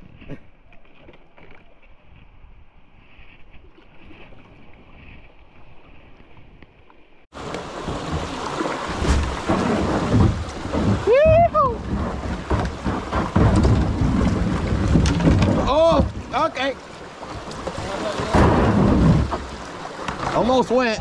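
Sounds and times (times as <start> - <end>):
creek water rushing: 7.3 - 21.0.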